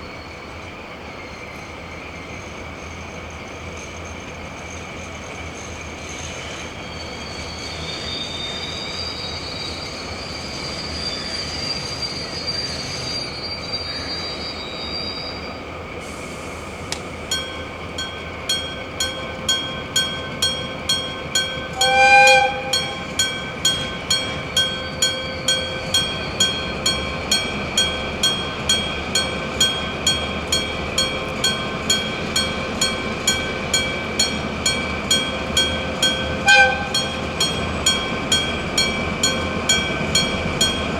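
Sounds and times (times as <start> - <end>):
level crossing bell ringing: 17.3 - 40.9
wavering high squeal: 17.3 - 40.9
locomotive horn blast: 20.2 - 27.2, 34.8 - 37.9.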